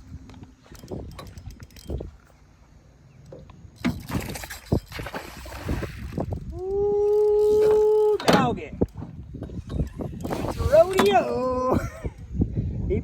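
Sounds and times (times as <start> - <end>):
fishing gear knocking and rattling: 0.2 - 2.4, 3.3 - 5.2.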